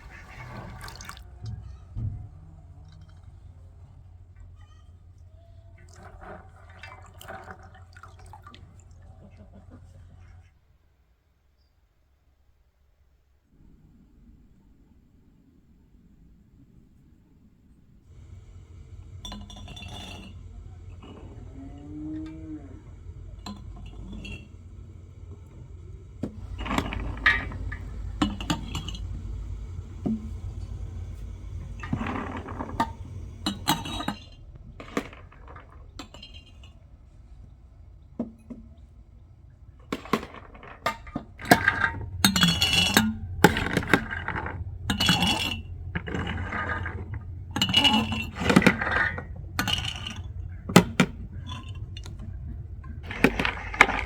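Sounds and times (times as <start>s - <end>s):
steady low rumble: 13.6s - 38.2s, 41.2s - 54.0s.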